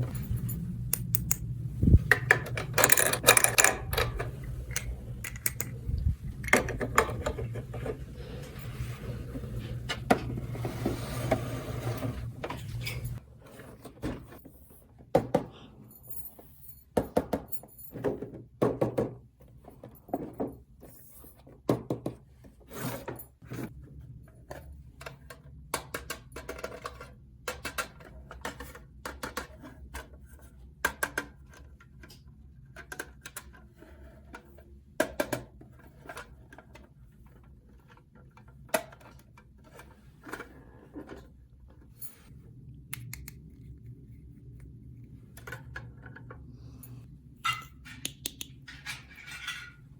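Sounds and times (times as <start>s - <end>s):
low steady hum: 0.0s - 13.3s, 39.7s - 49.9s.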